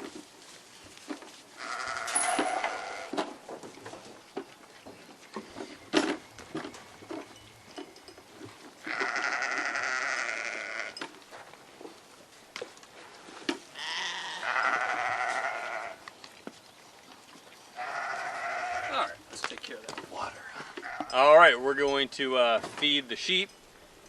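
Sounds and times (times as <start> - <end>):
livestock bleating: 1.6 - 3.2, 8.8 - 11.0, 13.7 - 16.0, 17.8 - 19.2, 20.6 - 21.2.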